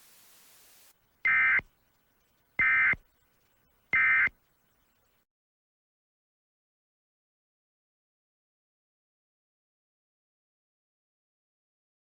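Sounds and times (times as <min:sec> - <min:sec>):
buzzy digital tones: 0:01.1 - 0:05.2.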